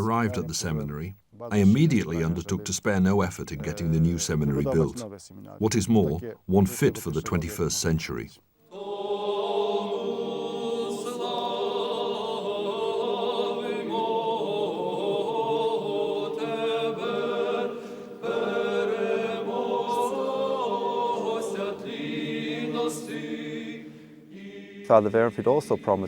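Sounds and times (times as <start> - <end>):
choir chanting: 8.7 - 26.0.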